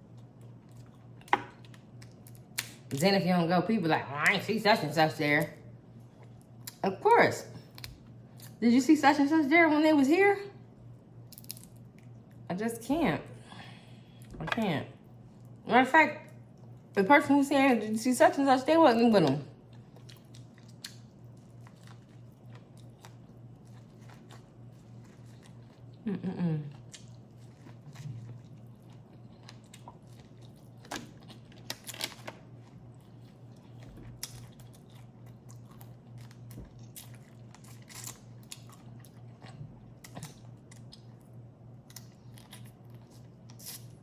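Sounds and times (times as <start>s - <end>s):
chewing: 19.7s - 26.0s, 26.7s - 32.1s, 32.9s - 41.3s.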